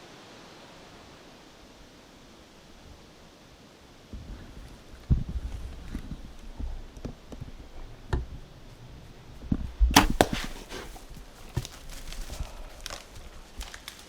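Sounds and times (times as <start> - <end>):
bow shot sharp snap: 10.0 - 11.0
knocks and rustling: 10.0 - 12.5.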